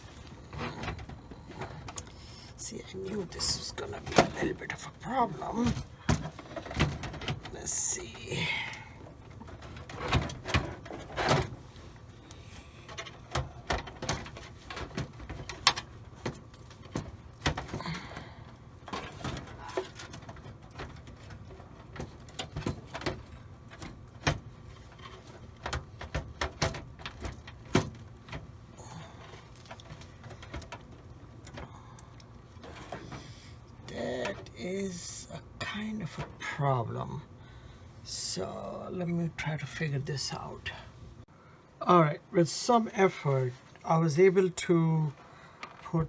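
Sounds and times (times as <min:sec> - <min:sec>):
clicks and knocks of computer parts: 0:00.1 - 0:02.2, 0:05.4 - 0:08.1, 0:09.1 - 0:11.7, 0:12.8 - 0:28.6, 0:29.2 - 0:34.6.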